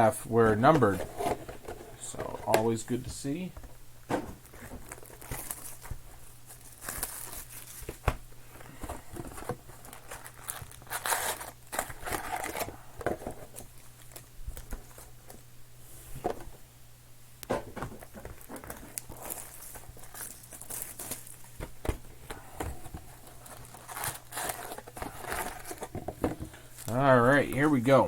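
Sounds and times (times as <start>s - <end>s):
plastic wrappers crinkling and tearing: 4.4s - 15.3s, 18.0s - 21.9s, 22.8s - 26.0s, 26.6s - 28.0s.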